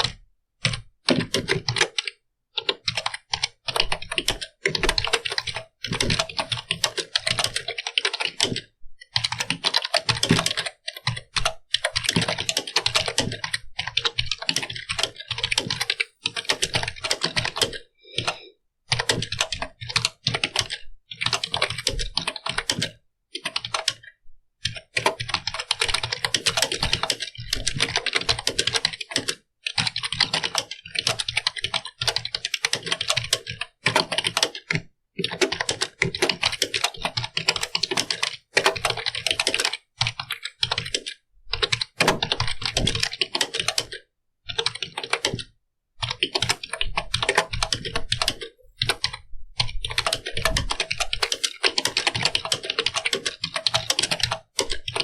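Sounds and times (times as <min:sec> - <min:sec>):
keyboard typing clicks: 0:00.0 - 0:24.0, 0:24.6 - 0:55.0.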